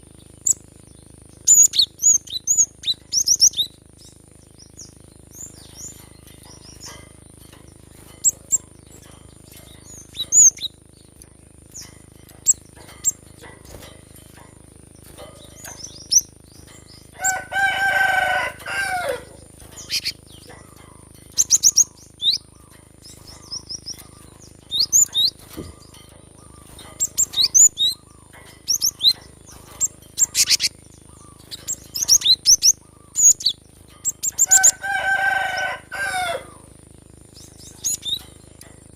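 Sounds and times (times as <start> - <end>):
bird chirping: 0.0 - 38.9
rooster crowing: 17.1 - 20.6, 34.4 - 36.8.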